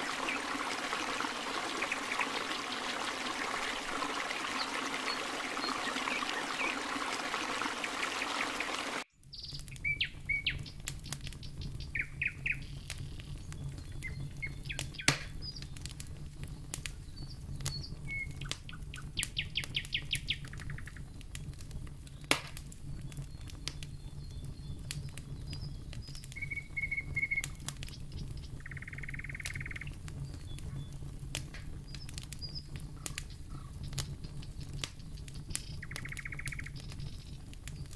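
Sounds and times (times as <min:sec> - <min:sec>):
stream running water: 0:00.0 - 0:09.1, 0:35.6 - 0:37.0
songbirds chirping and trilling: 0:00.0 - 0:15.9, 0:23.0 - 0:37.9.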